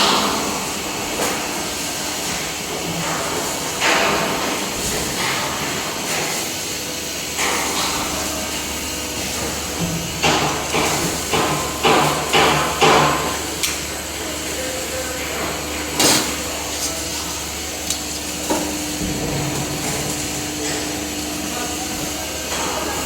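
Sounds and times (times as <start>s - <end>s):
machine knocks and clatters: 0.0s - 13.6s, 18.0s - 21.4s.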